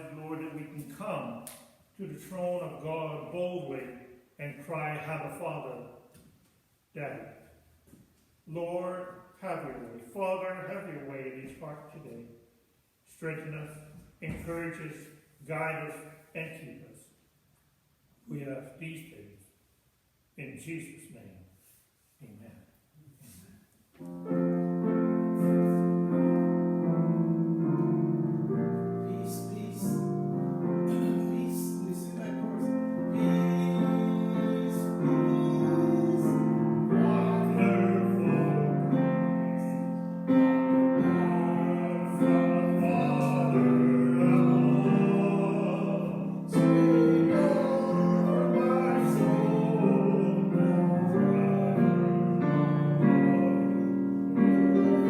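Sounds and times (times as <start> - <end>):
sustained keyboard chords: 24.0 - 55.0.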